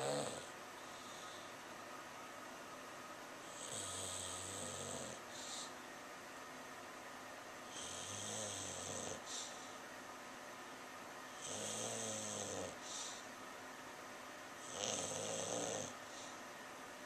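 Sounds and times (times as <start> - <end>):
dog snoring: 0.0 - 1.5, 3.4 - 5.7, 7.7 - 9.7, 11.3 - 13.3, 14.6 - 16.4.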